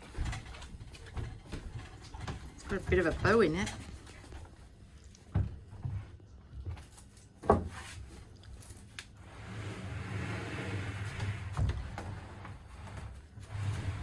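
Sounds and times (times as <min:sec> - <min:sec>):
steady scraping rub: 0:09.2 - 0:14.0.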